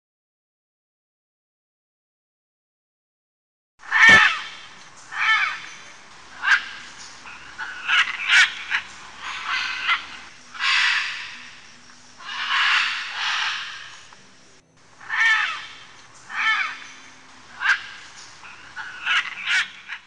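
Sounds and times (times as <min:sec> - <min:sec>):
harsh bird squawks from speaker: 0:03.9 - 0:05.8, 0:06.4 - 0:11.5, 0:12.2 - 0:14.0, 0:15.0 - 0:16.9, 0:17.6 - 0:20.0.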